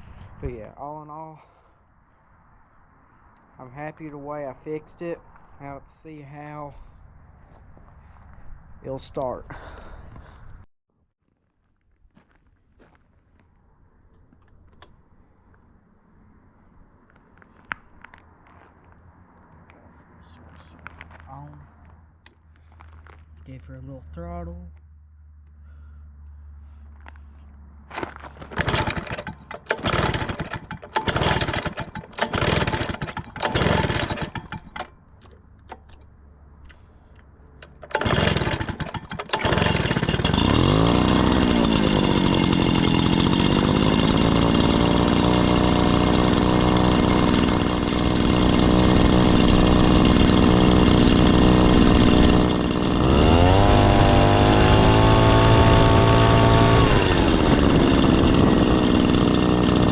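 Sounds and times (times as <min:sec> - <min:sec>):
starter rope pulls: 0:27.9 - 0:59.9
leaf blower engine revving: 0:28.0 - 0:34.9, 0:37.6 - 0:59.9.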